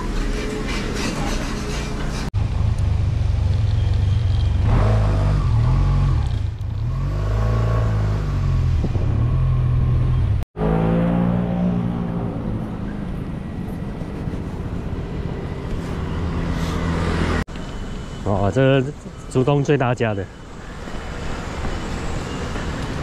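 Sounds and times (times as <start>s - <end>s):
motorcycle engine revving: 2.4s - 17.5s.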